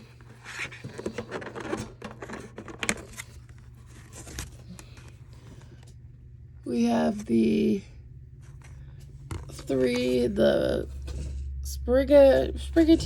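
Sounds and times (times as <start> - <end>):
cards being handled: 0.2 - 5.9
packaging rustling: 0.3 - 5.8.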